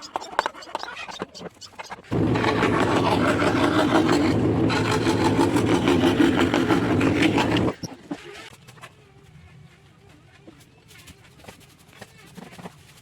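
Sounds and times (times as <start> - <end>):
scroll saw cutting wood: 0.0 - 8.1.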